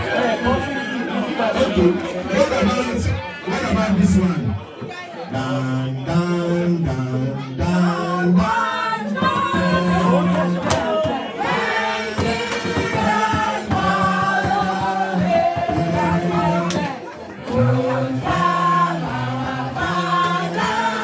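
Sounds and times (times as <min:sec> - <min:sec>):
choir singing with accompaniment: 0:05.3 - 0:21.0.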